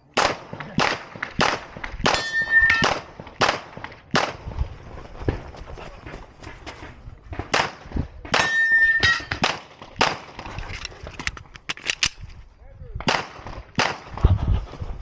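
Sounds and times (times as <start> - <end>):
pistol shots: 0.1 - 4.4, 13.0 - 14.2
steel target ringing: 2.2 - 3.0, 8.4 - 9.4.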